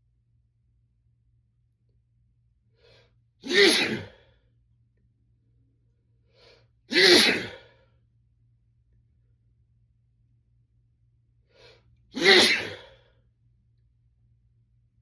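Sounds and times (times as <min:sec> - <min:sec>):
man sneezing: 0:03.4 - 0:04.3, 0:06.9 - 0:07.8, 0:12.2 - 0:13.0.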